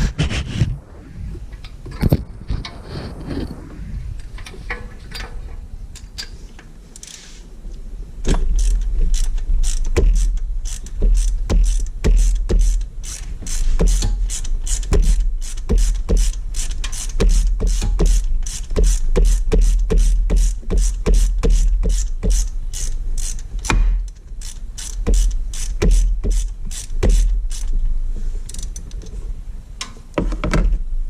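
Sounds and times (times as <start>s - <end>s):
low rumble: 0.0s - 5.9s
ratchet wrench clicking: 7.0s - 7.3s, 8.3s - 27.8s, 28.5s - 29.1s.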